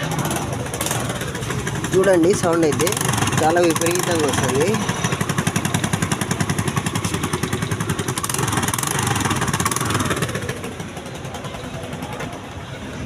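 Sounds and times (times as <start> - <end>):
scooter engine with loud exhaust: 0.0 - 13.0.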